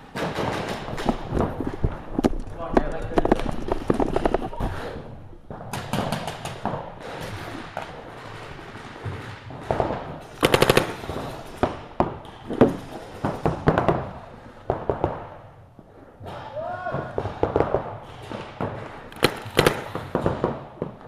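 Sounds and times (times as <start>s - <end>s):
paintball markers firing: 17.2s - 21.0s.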